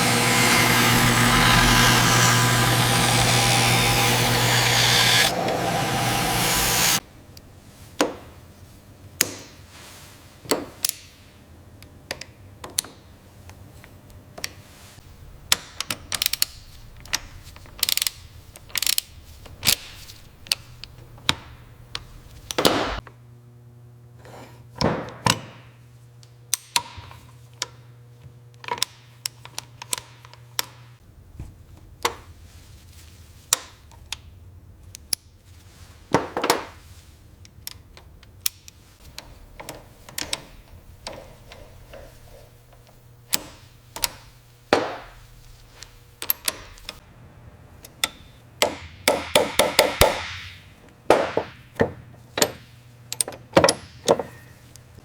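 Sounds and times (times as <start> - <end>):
loud steady hiss with hum: 0.0 - 7.0
low motor hum: 0.0 - 7.0
tools clicking and knocking: 39.0 - 47.0, 51.1 - 54.5.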